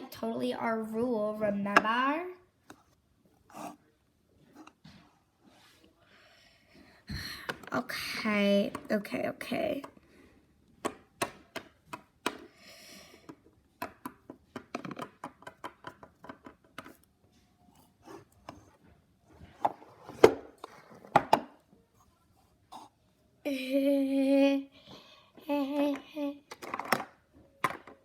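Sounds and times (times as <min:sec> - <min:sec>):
plastic toys clicking and tapping: 0:10.8 - 0:12.5, 0:13.2 - 0:17.0, 0:25.8 - 0:28.0.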